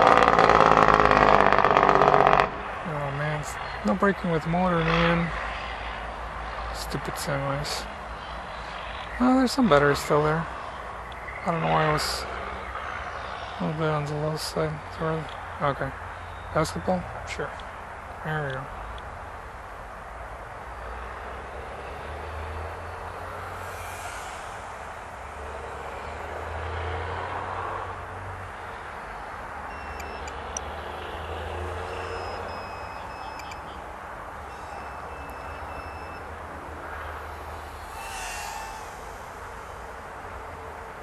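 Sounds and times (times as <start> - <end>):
road traffic rumble: 0.0 - 41.0
short high beeps: 31.9 - 33.7, 34.5 - 36.3.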